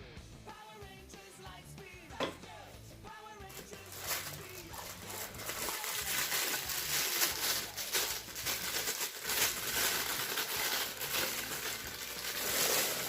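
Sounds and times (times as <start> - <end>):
packaging crinkling and rustling: 3.5 - 13.0.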